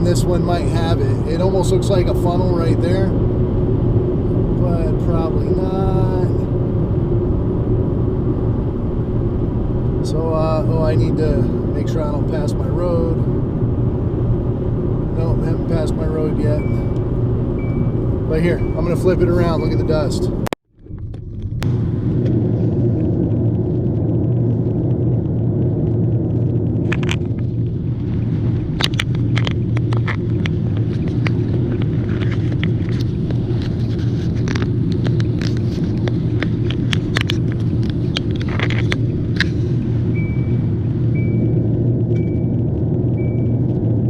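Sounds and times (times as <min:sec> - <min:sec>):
car road and engine rumble: 0:00.0 - 0:44.0
short high beep: 0:16.6 - 0:17.0, 0:40.1 - 0:41.6.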